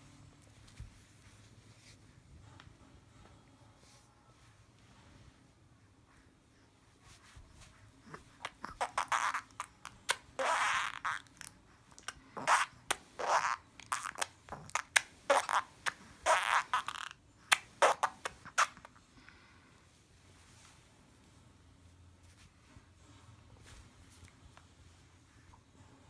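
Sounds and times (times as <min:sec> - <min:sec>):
person making sputtering noises: 0:08.5 - 0:18.8.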